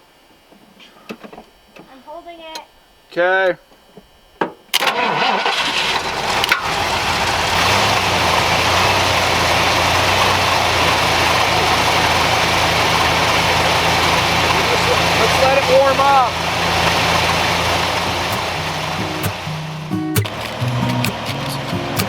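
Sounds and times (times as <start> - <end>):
truck engine cranking and starting: 4.7 - 22.0
truck engine idling: 5.5 - 22.0.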